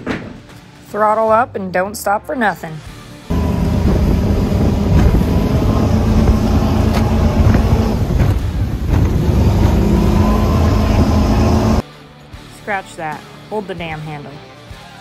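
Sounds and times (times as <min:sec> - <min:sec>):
powerboat engines at high throttle: 0:03.3 - 0:11.8.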